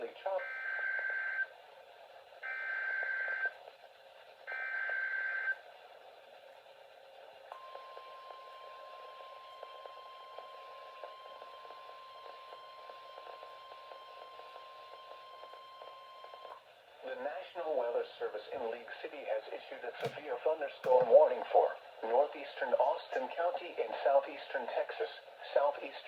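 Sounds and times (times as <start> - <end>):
steady warning alarm tone: 0.4 - 1.5, 2.4 - 3.5, 4.5 - 5.6, 7.5 - 16.6
weather radio hiss: 17.0 - 26.0.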